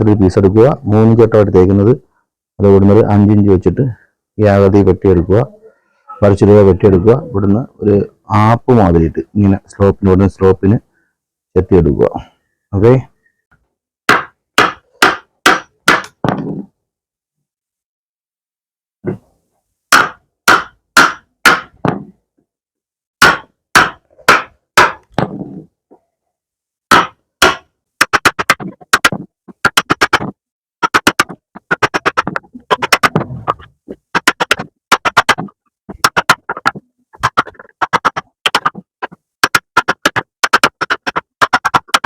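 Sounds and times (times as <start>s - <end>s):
hammer striking wood: 14.1s - 16.6s, 19.9s - 22.1s, 23.2s - 25.3s, 26.9s - 33.3s, 34.2s - 42.0s.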